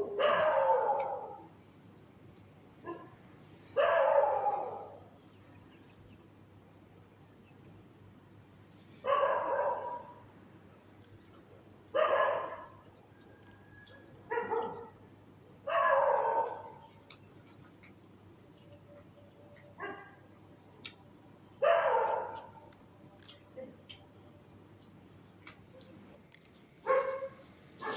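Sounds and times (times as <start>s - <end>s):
dog barking loudly: 0.0s - 1.4s, 3.8s - 4.9s, 9.1s - 10.1s, 12.0s - 12.7s, 14.3s - 14.9s, 15.7s - 16.8s, 21.6s - 22.5s, 26.9s - 27.9s.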